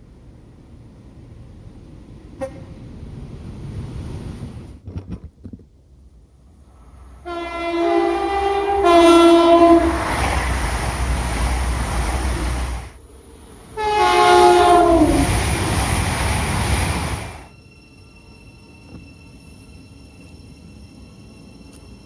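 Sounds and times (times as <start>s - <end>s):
train horn blast: 2.4s - 2.8s, 7.2s - 10.3s, 13.8s - 15.4s
train rushing past: 6.1s - 22.0s.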